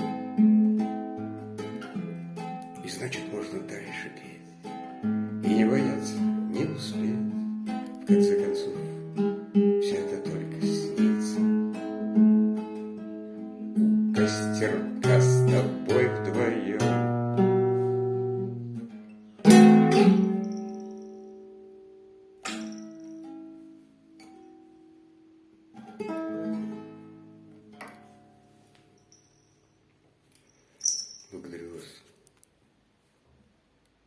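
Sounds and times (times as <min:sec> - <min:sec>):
acoustic guitar playing: 0:00.0 - 0:29.1
loud strummed guitar chord: 0:19.5 - 0:20.8.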